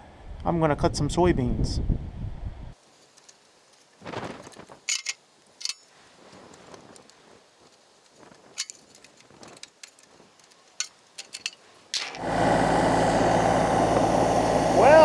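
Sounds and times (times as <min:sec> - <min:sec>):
faint shuffling: 0:02.8 - 0:12.0
metal covers clicking and knocking: 0:04.8 - 0:05.9, 0:08.6 - 0:12.2.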